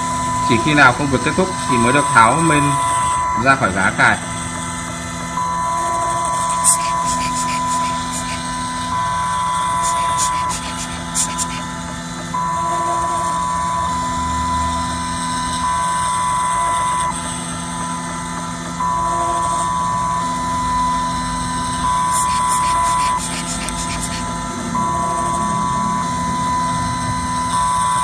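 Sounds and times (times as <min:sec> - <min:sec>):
milling spindle running: 0:00.0 - 0:12.2, 0:21.6 - 0:27.5
stepper motors whining: 0:00.0 - 0:28.0.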